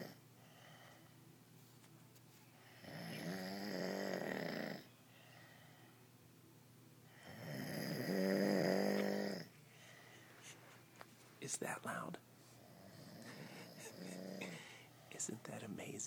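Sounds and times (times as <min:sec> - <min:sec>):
woman snoring: 0:00.0 - 0:00.2, 0:02.6 - 0:04.9, 0:07.1 - 0:09.5, 0:12.7 - 0:14.8
quiet breathing: 0:00.0 - 0:06.2, 0:08.7 - 0:16.0.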